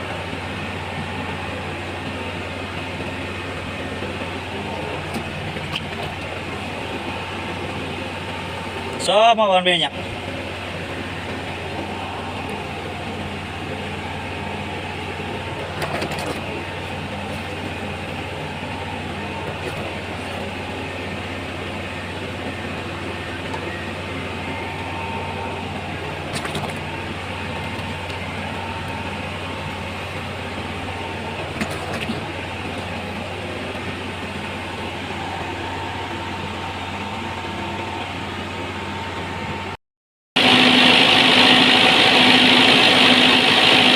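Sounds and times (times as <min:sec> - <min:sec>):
faint whine: 0:00.0 - 0:39.8
machine droning: 0:00.0 - 0:39.8, 0:40.4 - 0:43.9.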